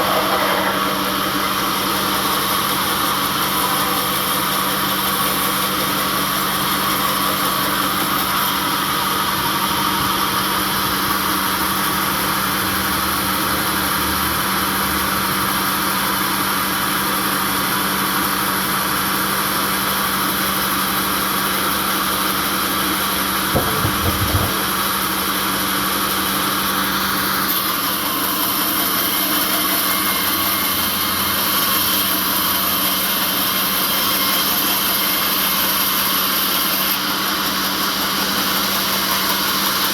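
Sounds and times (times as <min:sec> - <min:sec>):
sawmill motor hum: 0:00.0 - 0:39.9
low knocks: 0:23.6 - 0:24.8.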